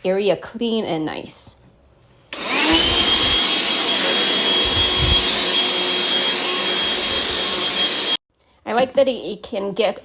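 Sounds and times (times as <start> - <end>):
low bumps of vacuum handling: 2.4 - 6.2
handheld vacuum motor whine: 2.4 - 8.2.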